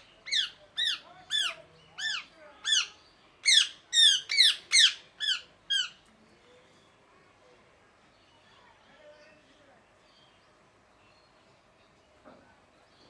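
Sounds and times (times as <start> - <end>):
parrot shrill calls: 0.3 - 6.0.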